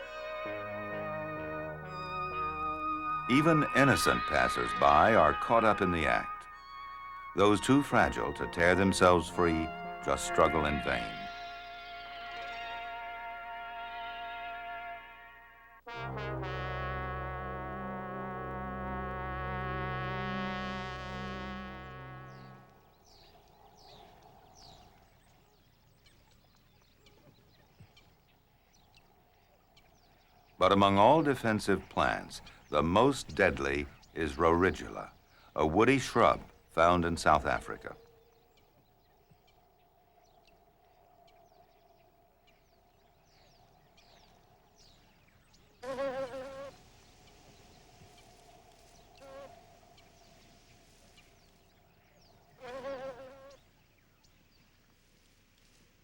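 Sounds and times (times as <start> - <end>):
faint outdoor ambience: 0.0 - 56.0
bird-like chirps: 10.6 - 13.0
faint ticks: 22.6 - 25.2
loud wavering fly buzz: 45.8 - 46.8, 52.6 - 53.6
flies buzzing: 45.8 - 46.9, 48.0 - 49.8, 52.6 - 53.6.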